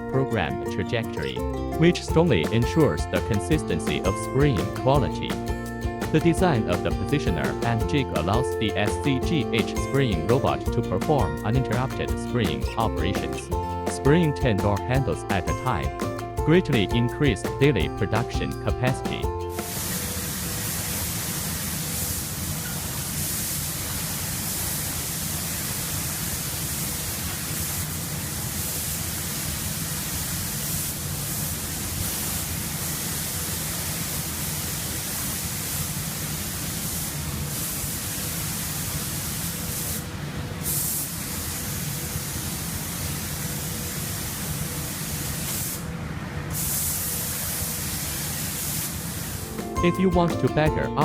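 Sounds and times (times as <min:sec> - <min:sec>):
paint spray gun hissing: 0:19.5 - 0:45.9, 0:46.5 - 0:49.6.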